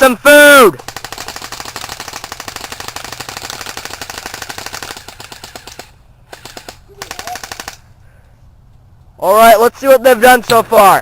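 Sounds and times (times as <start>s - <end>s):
airsoft guns firing: 0.8s - 7.9s.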